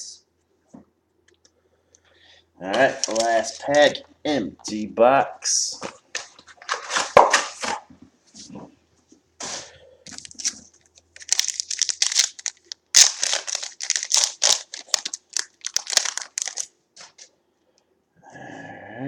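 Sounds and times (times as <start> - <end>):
foil pack tearing and crinkling: 2.8 - 4.0, 9.6 - 17.3.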